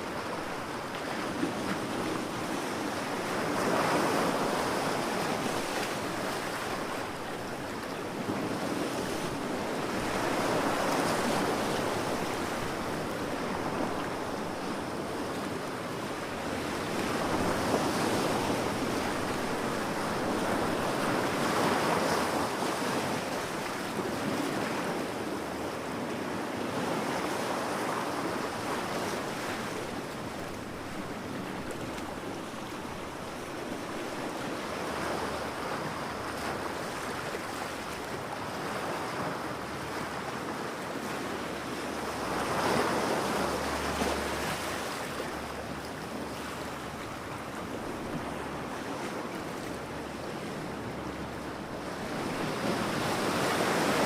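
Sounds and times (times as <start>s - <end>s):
waves breaking on beach: 0.0s - 54.0s.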